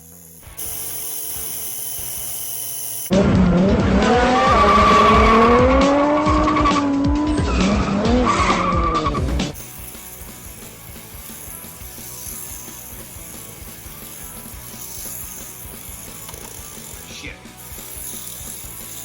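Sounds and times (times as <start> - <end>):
car tyre squeal: 4.3 - 9.2.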